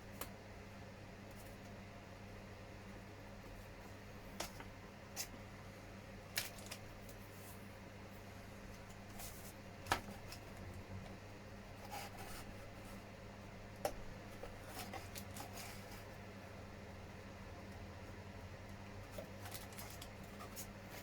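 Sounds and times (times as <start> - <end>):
plastic parts rustling: 6.3 - 7.2, 19.4 - 20.7.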